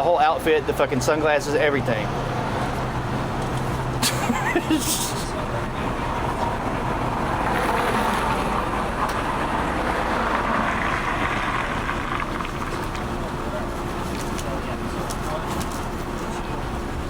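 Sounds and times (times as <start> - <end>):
vehicle passing: 0.5 - 14.1.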